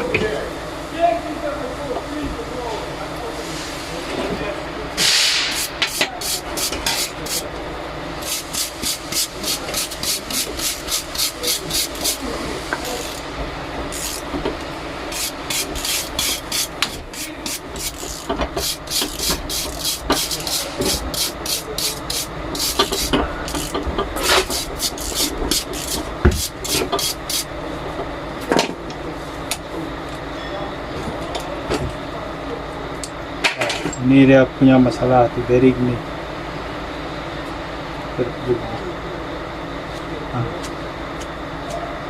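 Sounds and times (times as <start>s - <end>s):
hand scraping or filing: 5.4s - 7.5s, 8.2s - 13.3s, 13.9s - 14.3s, 15.1s - 27.5s.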